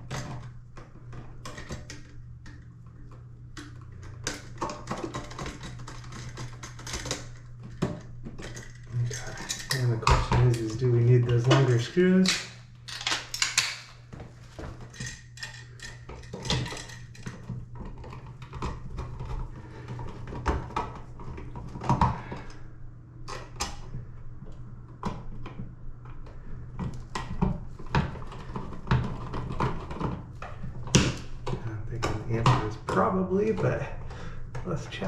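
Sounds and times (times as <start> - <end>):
steady low hum: 0.0 - 35.0
metal hardware clicking and scraping: 3.6 - 14.0, 14.8 - 17.5.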